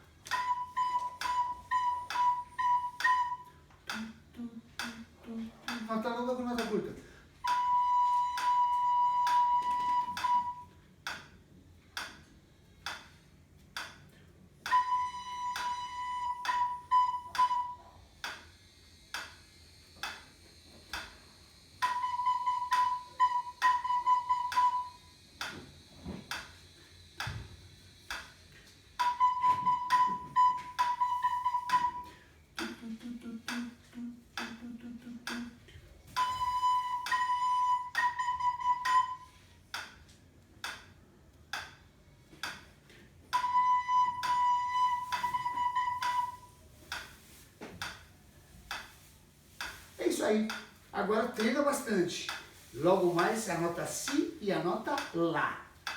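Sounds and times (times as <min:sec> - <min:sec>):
recorder playing notes: 0:00.2 - 0:05.0, 0:07.4 - 0:11.2, 0:14.6 - 0:18.4, 0:21.8 - 0:25.5, 0:29.0 - 0:39.9, 0:43.3 - 0:47.1
metronome ticking: 0:00.2 - 0:18.5, 0:19.1 - 0:19.4, 0:20.0 - 0:20.3, 0:21.8 - 0:25.6, 0:26.3 - 0:26.6, 0:28.0 - 0:48.1, 0:48.7 - 0:55.9.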